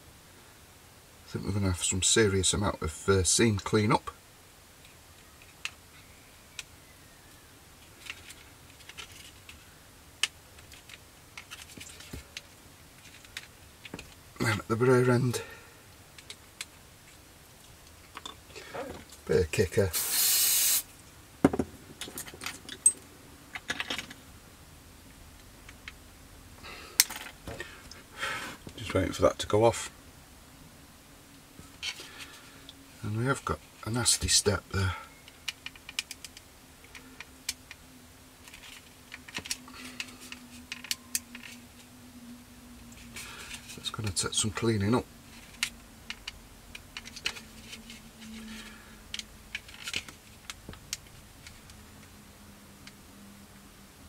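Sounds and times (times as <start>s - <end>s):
faint steady hum: 0.0s - 54.0s
plastic parts clicking and tapping: 35.3s - 37.8s, 38.4s - 41.6s, 45.3s - 52.1s.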